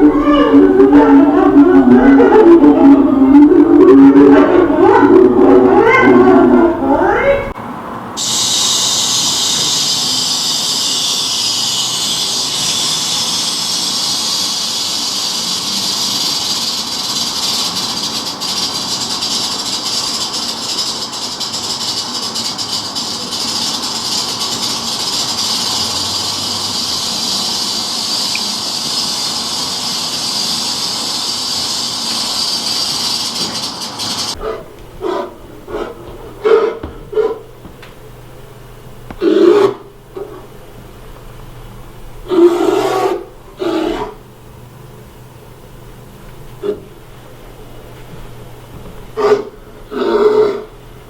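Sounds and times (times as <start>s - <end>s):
steady high hiss: 8.1s - 34.4s.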